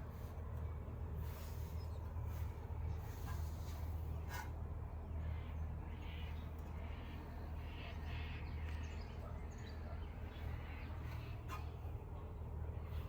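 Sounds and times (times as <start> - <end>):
steady low hum: 0.0 - 13.0
faint bird calls: 4.3 - 12.2.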